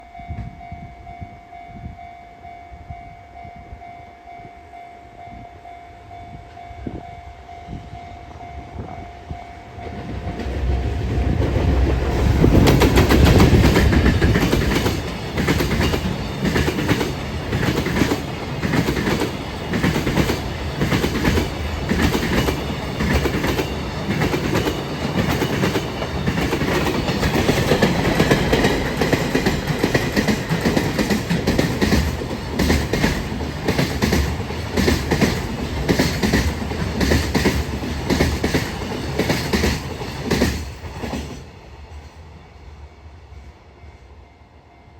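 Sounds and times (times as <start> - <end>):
level crossing warning bell: 0.0 - 10.5
train wheels clickety-clack: 9.8 - 42.2.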